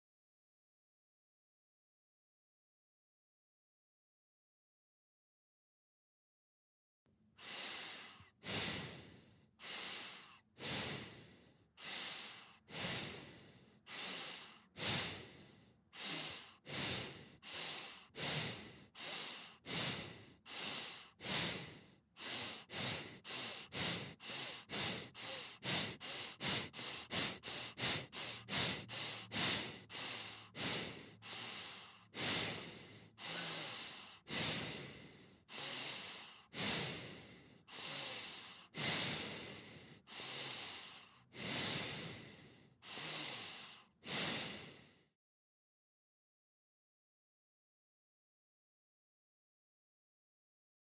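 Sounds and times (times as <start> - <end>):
person breathing through nose: 7.4 - 45.1.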